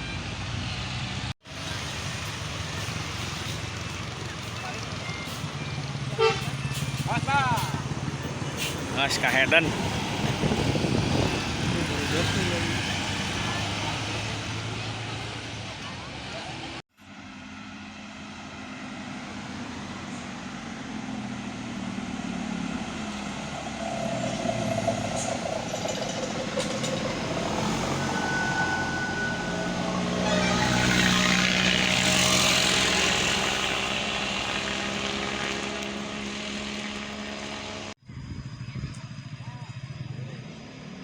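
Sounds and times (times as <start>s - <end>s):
bus engine passing: 0.0s - 38.5s
brief tones: 27.3s - 31.2s.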